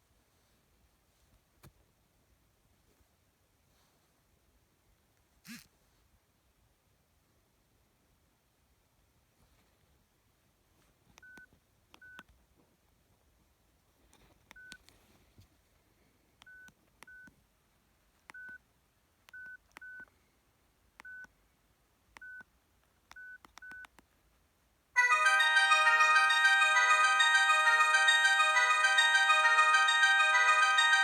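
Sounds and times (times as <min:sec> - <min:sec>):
phone key beeps: 0:18.3 - 0:18.6, 0:21.0 - 0:21.3, 0:23.1 - 0:23.9
chiming ringtone melody: 0:25.0 - 0:31.0.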